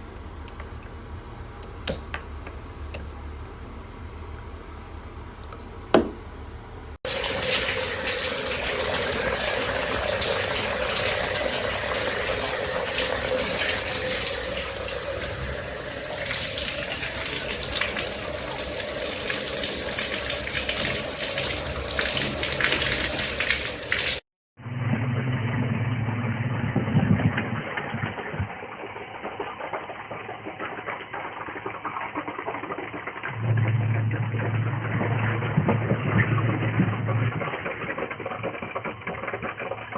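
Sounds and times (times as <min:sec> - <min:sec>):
low hum: 0:24.6 - 0:29.1, 0:33.2 - 0:38.9.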